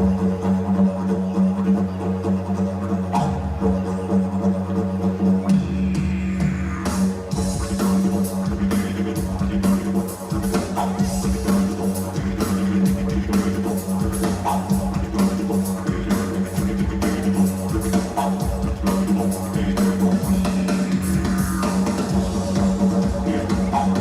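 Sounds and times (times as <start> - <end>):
music with low drone: 0.0 - 24.0
drums beating: 5.4 - 24.0.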